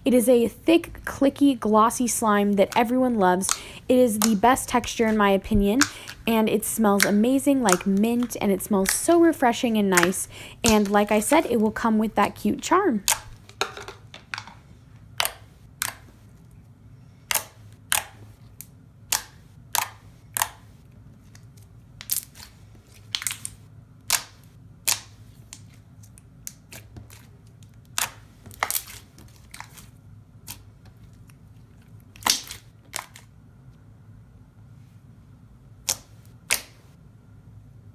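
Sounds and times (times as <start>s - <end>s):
slime clicking and popping: 2.6s - 12.4s, 13.1s - 13.4s, 15.2s - 16.1s, 17.3s - 18.2s, 19.1s - 20.7s, 23.1s - 25.7s, 32.2s - 33.2s, 35.8s - 36.8s.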